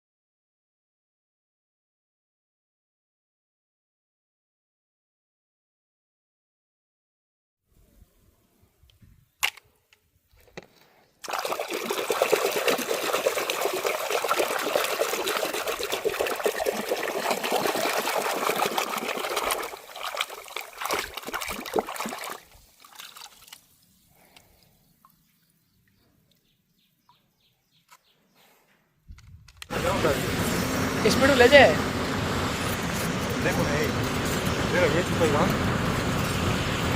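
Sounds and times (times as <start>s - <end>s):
water running and splashing: 11.2s - 24.0s.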